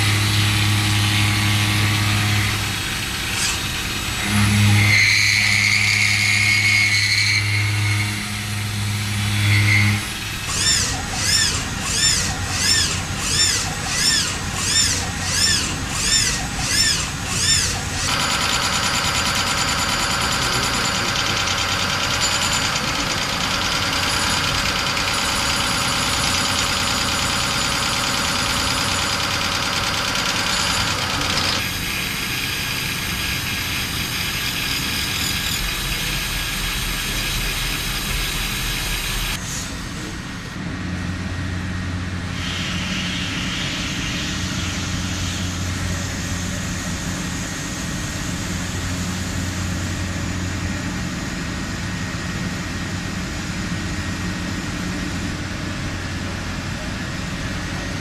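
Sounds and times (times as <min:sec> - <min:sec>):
machine tool whining: 0:00.0 - 0:40.1.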